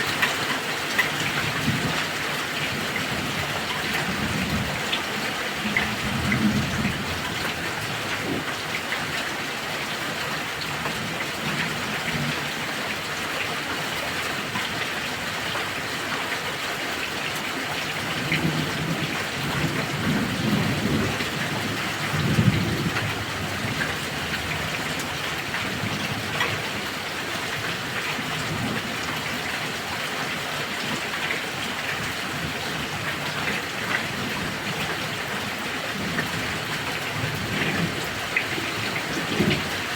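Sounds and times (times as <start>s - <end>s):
heavy rain falling: 0.0s - 39.9s
low thunder rumbling: 18.2s - 25.0s.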